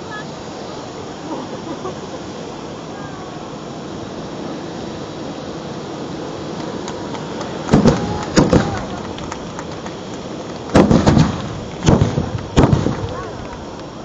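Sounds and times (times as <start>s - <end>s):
fireworks spraying with rushing hiss: 0.0s - 14.0s
sharp bangs: 7.7s - 9.9s, 10.6s - 13.6s.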